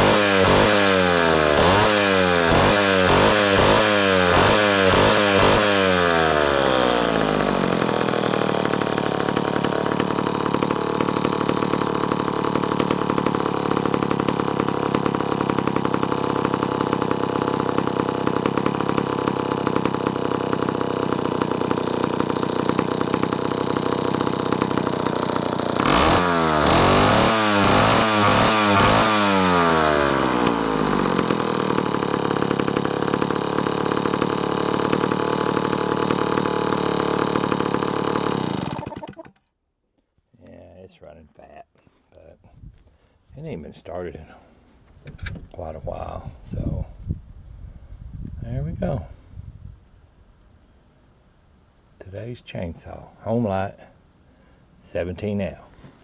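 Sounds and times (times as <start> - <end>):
chainsaw revving and idling: 0.0 - 39.4, 45.5 - 47.2.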